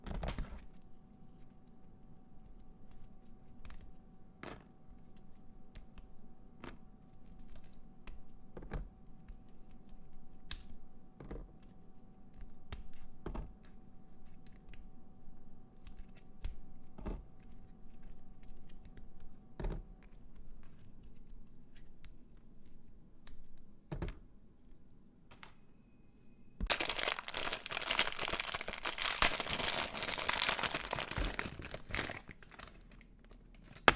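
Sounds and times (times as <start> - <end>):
loud crinkling rustle: 26.7 - 33.9.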